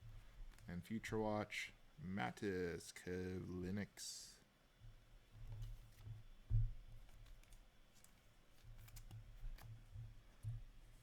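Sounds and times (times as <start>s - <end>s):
trading cards handled on table: 7.0s - 9.8s.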